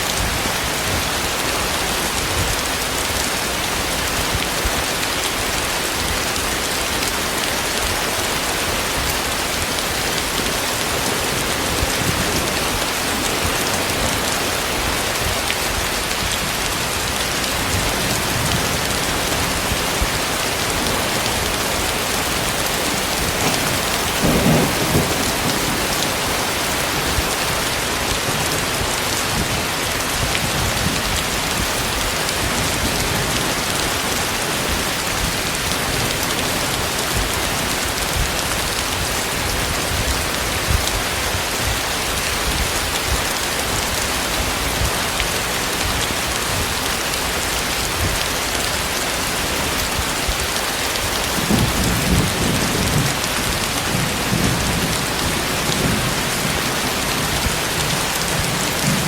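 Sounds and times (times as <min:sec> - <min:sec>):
heavy rain falling: 0:00.0 - 0:59.0
thunder clap: 0:17.0 - 0:39.0, 0:51.2 - 0:59.0.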